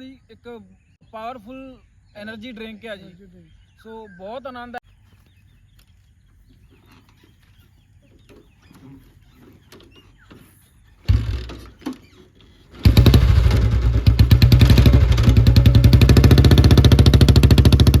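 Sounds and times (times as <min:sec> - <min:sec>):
faint bird calls: 0:00.0 - 0:12.8
motorcycle engine starting: 0:11.0 - 0:18.0.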